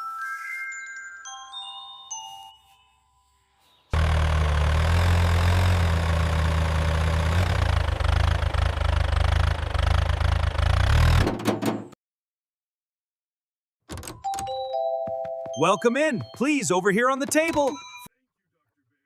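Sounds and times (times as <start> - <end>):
vehicle engine rumbling: 4.0 - 11.3.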